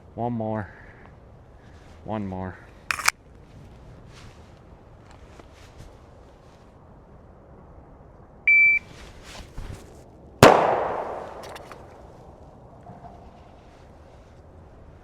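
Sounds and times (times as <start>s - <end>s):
pistol shot with echo: 10.4s - 11.9s.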